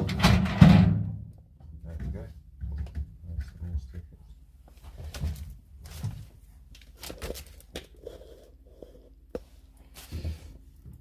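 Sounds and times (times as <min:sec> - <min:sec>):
plastic film rustling and crinkling: 0:04.9 - 0:07.8.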